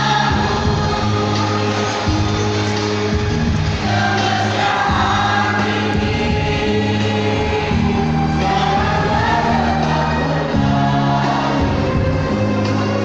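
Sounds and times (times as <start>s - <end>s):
choir singing: 0.0s - 13.0s
musical accompaniment: 0.0s - 13.0s.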